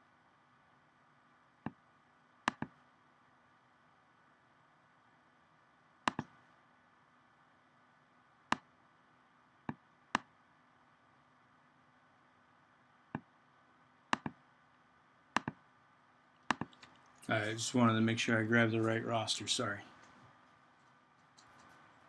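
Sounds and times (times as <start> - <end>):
computer mouse clicking: 2.5 - 2.8, 6.1 - 6.3, 9.7 - 10.3, 14.1 - 14.4, 15.4 - 15.6, 16.4 - 17.1, 21.2 - 21.8.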